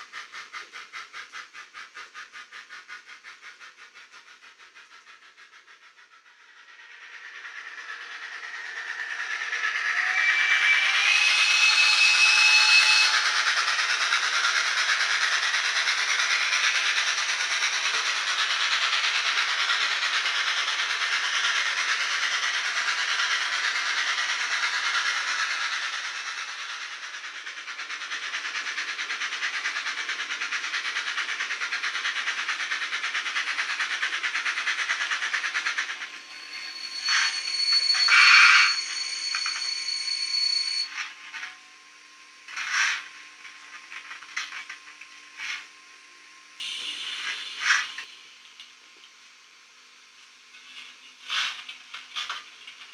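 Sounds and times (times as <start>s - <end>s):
model train steam chuffs: 0.0s - 52.9s.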